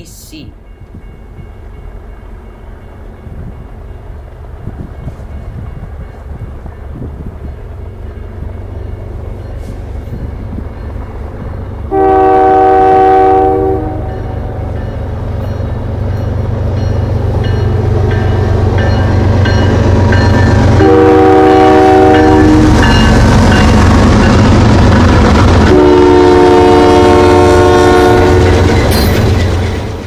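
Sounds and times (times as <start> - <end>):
diesel train engines rumbling: 0.0 - 30.0
train horn chords: 11.9 - 14.6, 20.7 - 22.9, 25.7 - 28.7.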